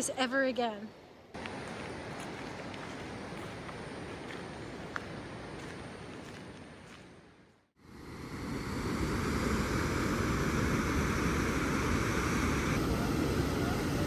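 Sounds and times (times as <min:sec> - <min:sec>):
rushing water: 0:01.4 - 0:07.5.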